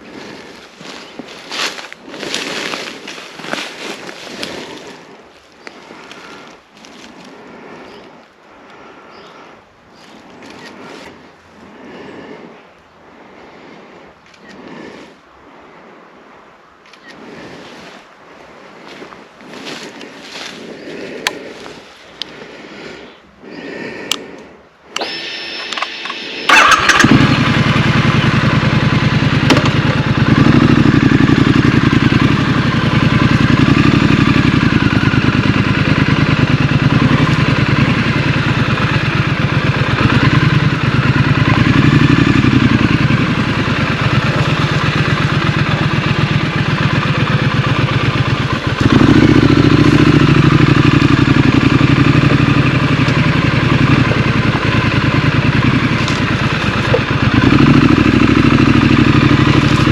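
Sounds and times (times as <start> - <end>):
motorcycle engine revving: 0.0 - 8.8, 24.9 - 59.9.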